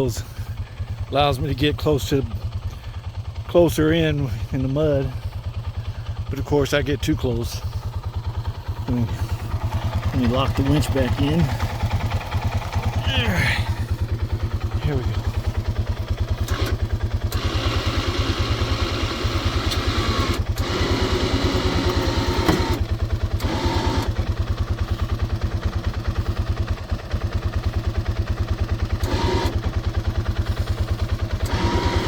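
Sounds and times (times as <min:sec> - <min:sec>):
small engine idling: 0:00.0 - 0:32.0
electric winch pulling: 0:08.9 - 0:14.0, 0:16.1 - 0:26.7, 0:28.8 - 0:32.0.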